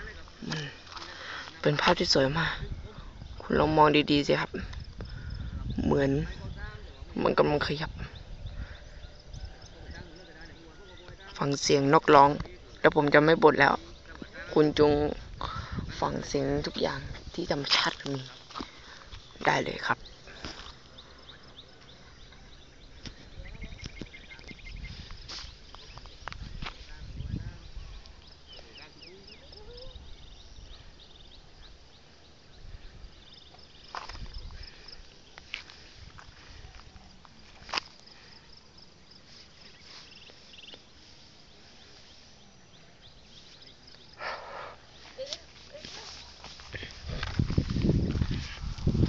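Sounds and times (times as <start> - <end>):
wild birds chirping: 0.0 - 49.0
rustling: 45.0 - 49.0.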